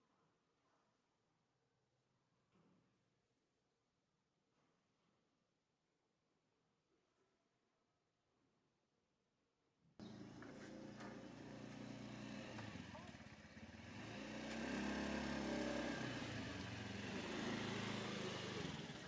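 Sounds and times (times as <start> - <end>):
engine running: 10.0 - 19.0.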